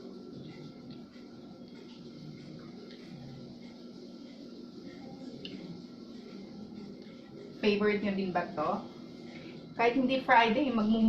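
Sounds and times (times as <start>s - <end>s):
chewing: 0.4s - 5.7s.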